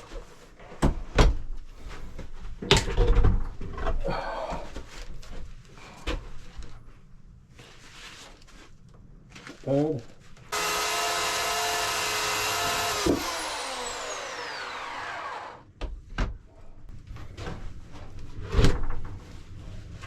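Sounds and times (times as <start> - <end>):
power saw running: 10.5 - 15.6.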